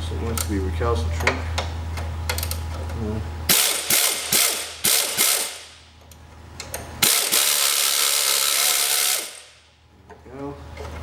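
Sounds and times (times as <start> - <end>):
impact wrench bursts: 3.5 - 5.9, 7.0 - 9.7.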